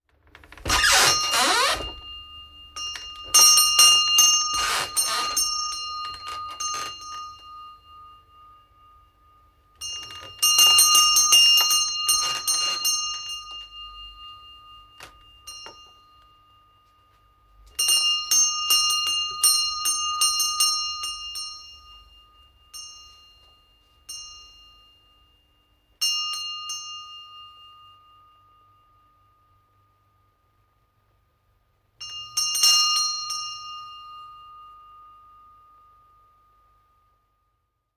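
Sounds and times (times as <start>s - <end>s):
door hinge squeak: 0.4s - 2.1s, 4.5s - 5.4s
shop door bell jangling: 0.6s - 28.7s, 32.0s - 35.6s.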